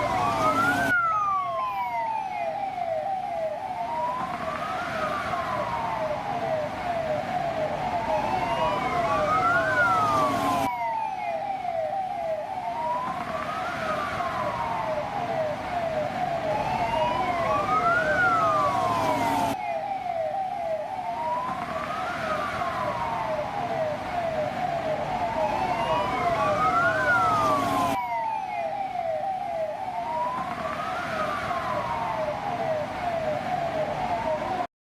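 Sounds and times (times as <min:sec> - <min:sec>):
police siren wailing: 0:00.0 - 0:34.7
short falling siren chirps: 0:16.6 - 0:21.4.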